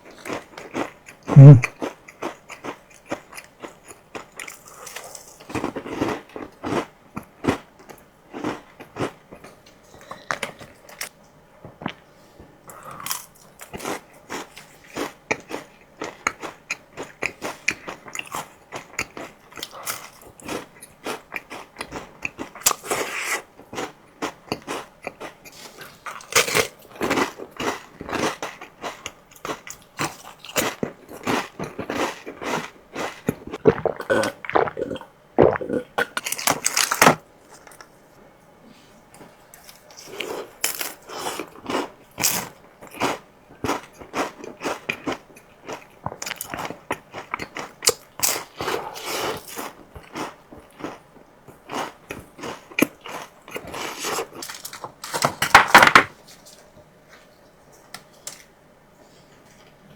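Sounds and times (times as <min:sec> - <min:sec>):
crunchy chewing: 0:00.0 - 0:12.0, 0:12.7 - 0:37.9, 0:39.1 - 0:55.3.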